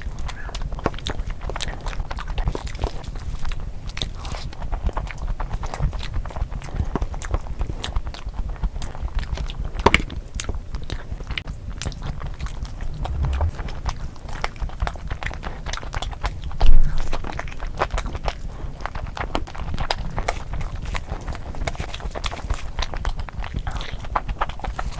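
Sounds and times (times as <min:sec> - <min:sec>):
person chewing food: 0:00.0 - 0:24.9
loud low thump: 0:12.8 - 0:14.0.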